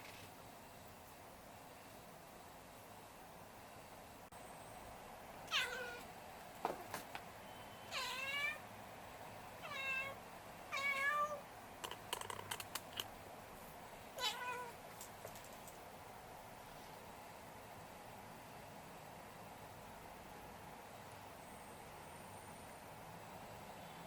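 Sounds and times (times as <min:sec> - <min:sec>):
cat chirping: 0:05.5 - 0:06.0, 0:07.9 - 0:08.6, 0:14.2 - 0:14.8
cat clicking: 0:11.8 - 0:13.1.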